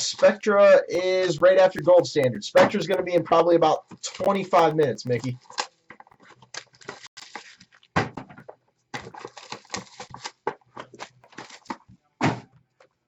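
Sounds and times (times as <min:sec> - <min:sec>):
sharp knock: 0:01.0 - 0:03.3, 0:04.2 - 0:05.4.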